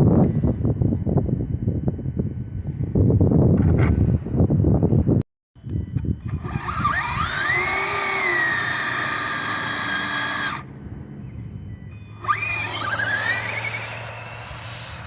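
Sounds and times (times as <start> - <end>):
wind noise on microphone: 0.0 - 15.0
electric motor whining: 6.0 - 15.0.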